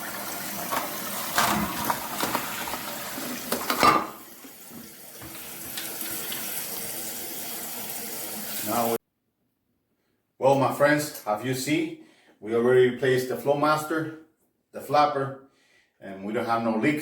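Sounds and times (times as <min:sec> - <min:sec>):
toilet flushing: 0:00.0 - 0:09.0.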